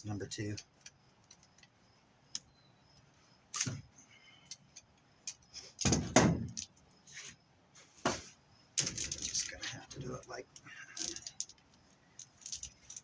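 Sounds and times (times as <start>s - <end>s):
metallic clicks and knocks of wire: 8.8s - 13.0s.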